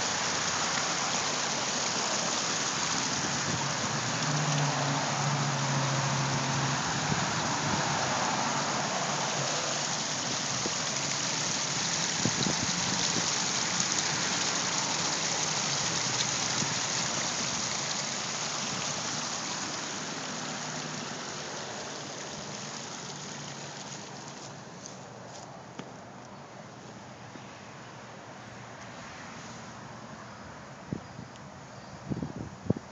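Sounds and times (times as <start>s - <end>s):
waterfall pouring and splashing: 0.0s - 25.0s.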